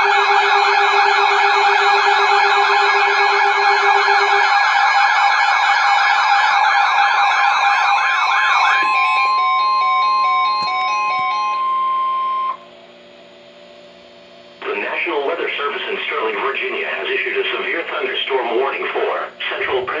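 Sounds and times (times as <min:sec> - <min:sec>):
electronic alert siren warbling: 0:00.0 - 0:12.6.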